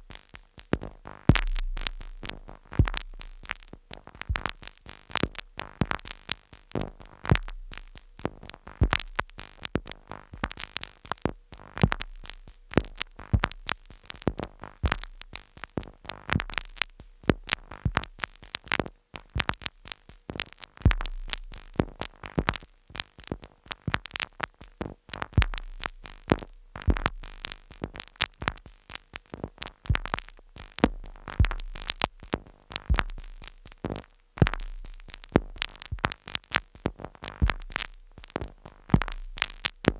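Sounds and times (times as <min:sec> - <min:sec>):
deep bass thumps: 0:01.3 - 0:03.7, 0:04.3 - 0:04.7, 0:07.3 - 0:08.0, 0:08.8 - 0:09.3, 0:20.9 - 0:21.5, 0:25.4 - 0:27.5, 0:29.9 - 0:33.8, 0:34.4 - 0:36.2, 0:37.2 - 0:39.9.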